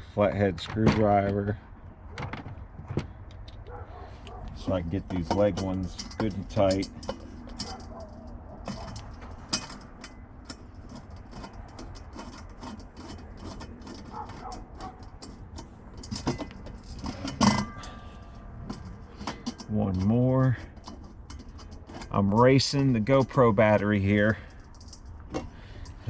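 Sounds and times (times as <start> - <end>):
screwdriver clicking on metal: 4.2 - 18.0.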